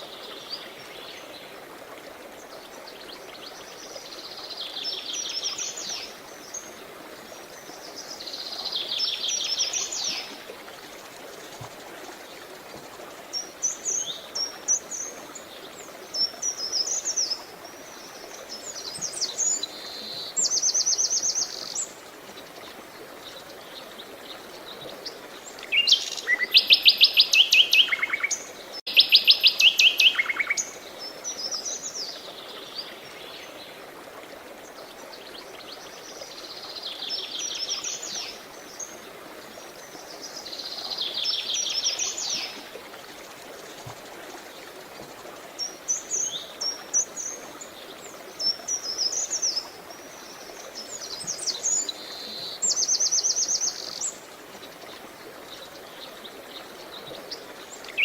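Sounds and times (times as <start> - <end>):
flowing water: 0.0 - 58.0
songbirds trilling and chirping: 34.6 - 58.0.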